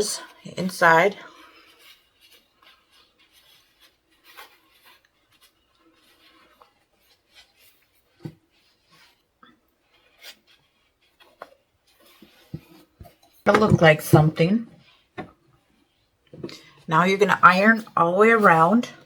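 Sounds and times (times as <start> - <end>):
quilted fabric rustling: 0.0 - 19.0.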